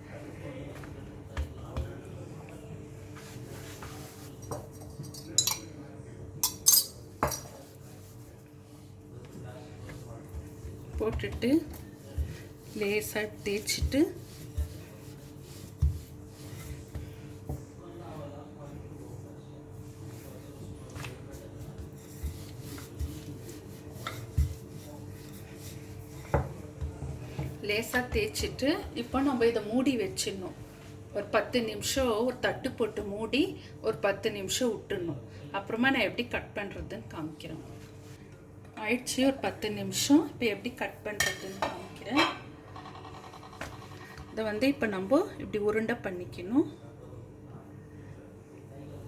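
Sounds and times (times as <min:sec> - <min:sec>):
hands rubbing dough: 0:03.0 - 0:04.7, 0:07.5 - 0:17.6, 0:18.9 - 0:31.0
kitchen utensils clinking: 0:04.4 - 0:05.7, 0:06.4 - 0:07.6, 0:41.2 - 0:44.4.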